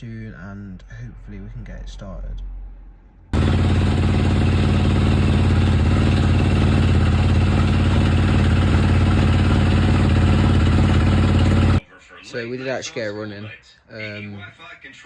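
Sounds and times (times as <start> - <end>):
dirt bike engine running: 3.4 - 11.8.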